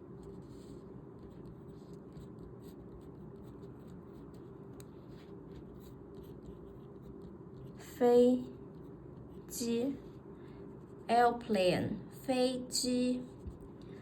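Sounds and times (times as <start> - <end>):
pen scratching on paper: 0.0 - 10.2.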